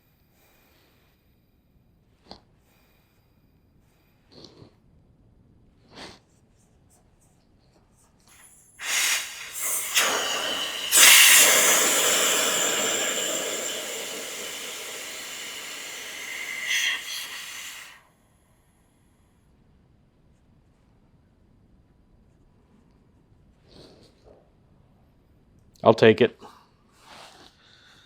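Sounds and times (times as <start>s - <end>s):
compressed air hissing: 8.3s - 18.0s.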